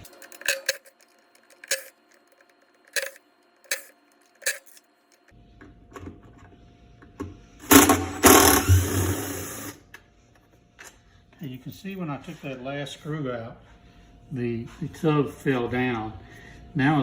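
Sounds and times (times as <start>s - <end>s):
motor running: 7.7s - 9.8s.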